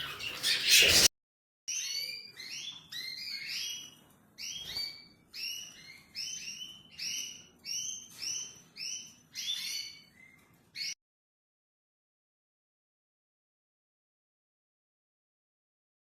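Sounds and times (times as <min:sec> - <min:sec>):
bird making harsh calls: 0:00.0 - 0:01.1.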